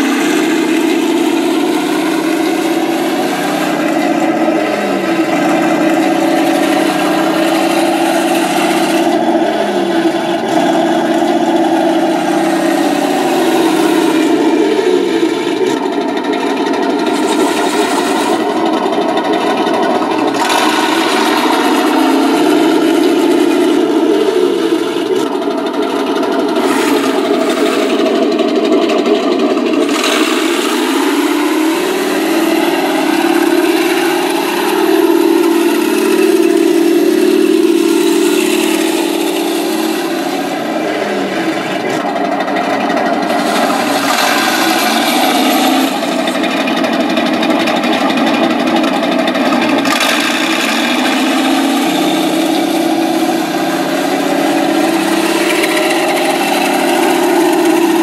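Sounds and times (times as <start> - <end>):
tank engine sound idling and revving: 0.0 - 58.0.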